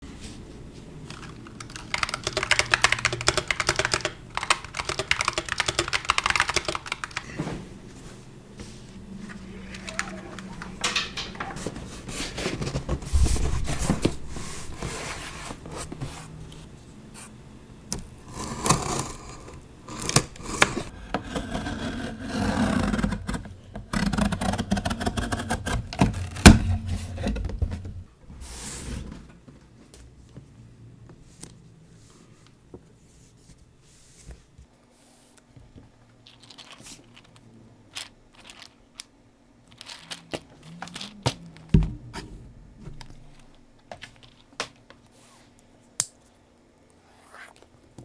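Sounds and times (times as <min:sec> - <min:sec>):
packaging scraping and rubbing: 0:39.7 - 0:41.7.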